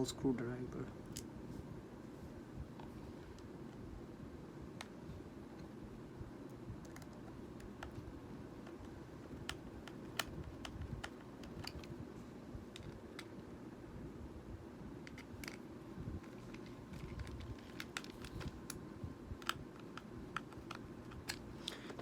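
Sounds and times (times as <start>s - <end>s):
faint low hum: 0.0s - 22.0s
screwdriver clicks and taps: 9.5s - 11.9s
plastic parts handled: 16.2s - 18.8s.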